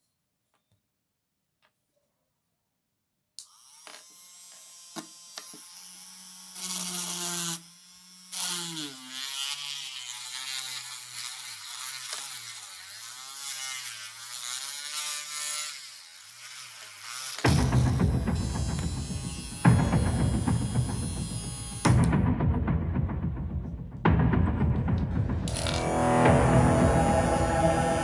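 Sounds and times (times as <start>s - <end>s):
small drill motor whining: 3.4s - 17.5s, 18.3s - 21.9s, 25.5s - 26.1s.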